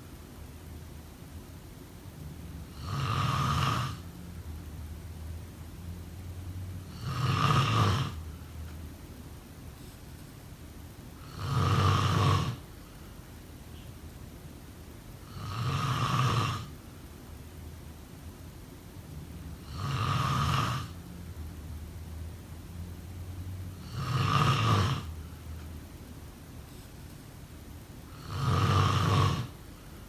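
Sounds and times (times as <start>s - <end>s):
person snoring: 2.7s - 4.1s, 6.8s - 8.3s, 11.2s - 12.6s, 15.2s - 16.7s, 19.6s - 21.0s, 23.7s - 25.2s, 28.1s - 29.6s
quiet breathing: 11.2s - 13.4s, 26.6s - 27.4s, 28.0s - 30.0s.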